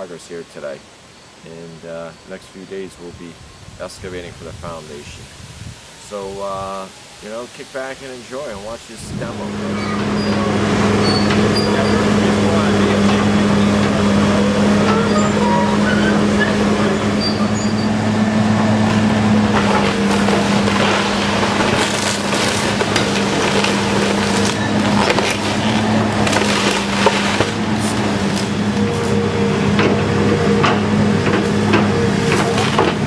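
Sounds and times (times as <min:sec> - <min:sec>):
heavy machine engine running: 0:09.0 - 0:33.0
wood splintering and breaking: 0:18.1 - 0:33.0.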